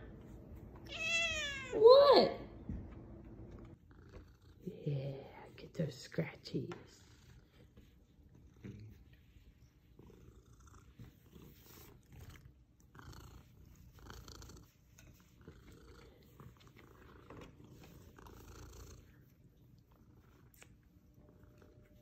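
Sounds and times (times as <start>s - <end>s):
cat purring: 3.4s - 5.8s, 6.9s - 22.0s.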